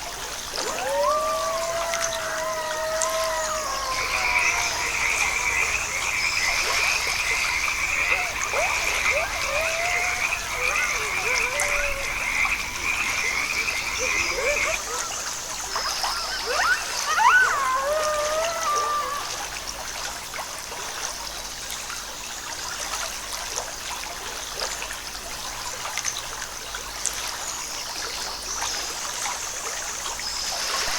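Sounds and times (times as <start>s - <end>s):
rising and falling whistles: 0.6s - 19.4s
frog trilling: 0.6s - 19.6s.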